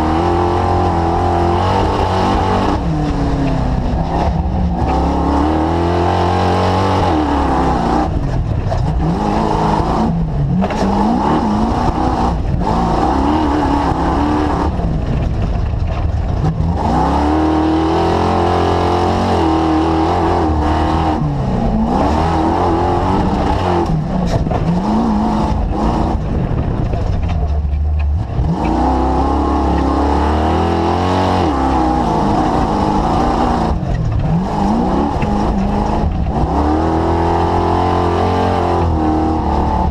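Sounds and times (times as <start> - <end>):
engine revving: 0.0 - 39.9.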